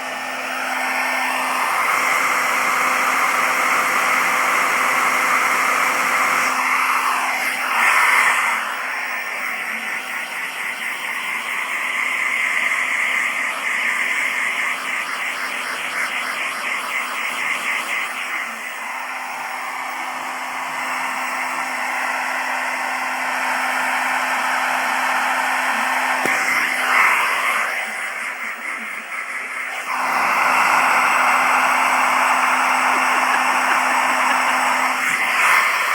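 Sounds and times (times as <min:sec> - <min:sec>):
hair dryer running: 0:00.0 - 0:35.9.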